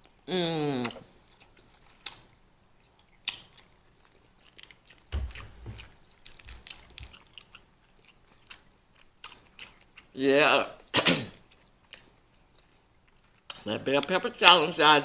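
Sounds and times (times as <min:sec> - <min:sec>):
chewing and biting: 0:00.9 - 0:10.2
sharp clicks and crackles: 0:04.6 - 0:07.6
low thumps: 0:05.1 - 0:07.1.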